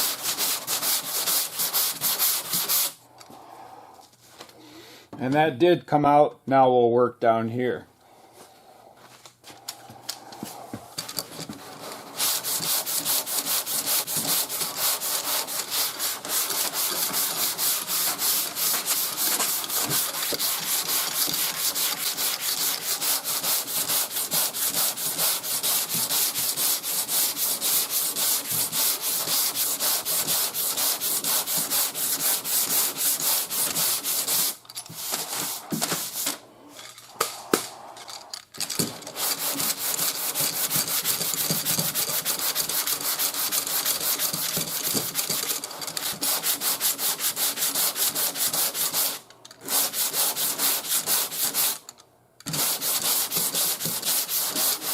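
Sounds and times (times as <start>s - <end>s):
sandpaper rubbing on car panel: 0.0s - 3.0s, 11.6s - 36.2s, 39.1s - 51.8s, 52.5s - 54.9s.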